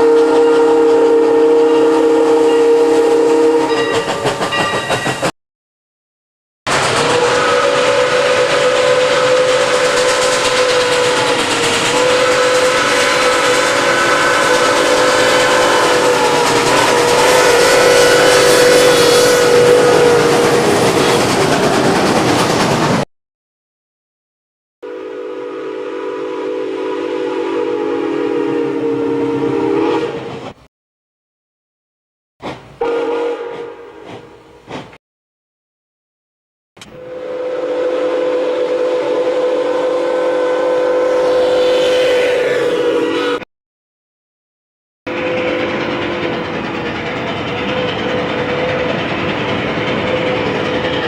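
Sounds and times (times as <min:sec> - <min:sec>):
steam locomotive whistle chord: 0:00.0 - 0:05.0, 0:06.7 - 0:21.3, 0:24.8 - 0:30.3, 0:32.8 - 0:34.6, 0:36.8 - 0:43.5, 0:45.1 - 0:51.0.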